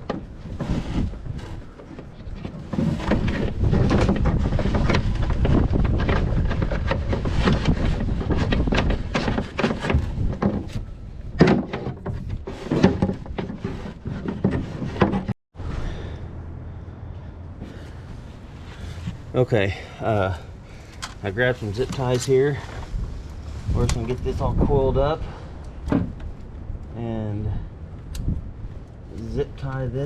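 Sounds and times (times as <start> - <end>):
clattering and knocking: 1.6 - 15.4.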